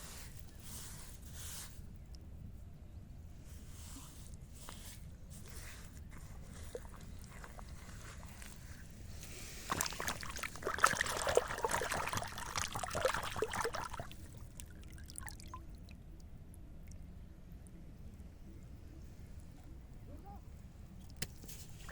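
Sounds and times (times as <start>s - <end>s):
water trickling and splashing: 6.2s - 8.7s, 9.6s - 16.2s.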